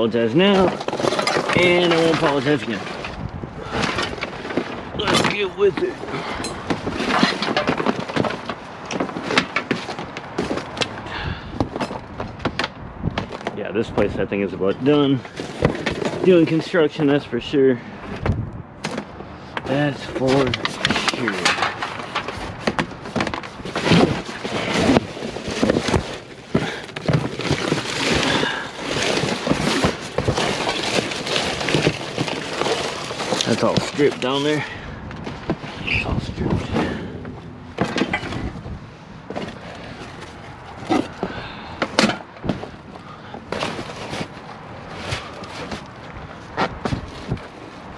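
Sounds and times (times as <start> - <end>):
debris rustling: 0.5 - 3.2, 24.0 - 34.8
scrap knocking and clanking: 0.6 - 3.1, 20.8 - 34.7
wind on microphone: 3.0 - 5.0, 18.1 - 18.8.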